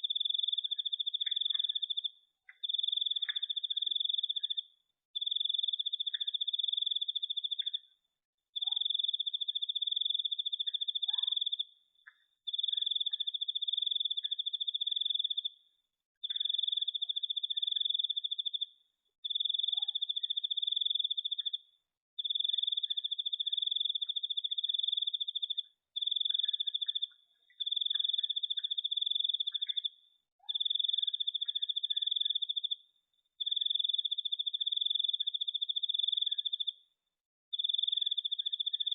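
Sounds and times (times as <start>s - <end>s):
cricket trilling: 22.2s - 30.0s, 33.4s - 36.8s, 37.5s - 38.9s.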